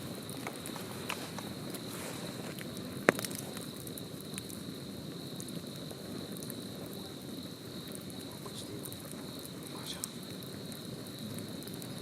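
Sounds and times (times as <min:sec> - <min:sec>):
loud fire pop: 0:00.0 - 0:04.4
campfire crackling: 0:00.0 - 0:12.0.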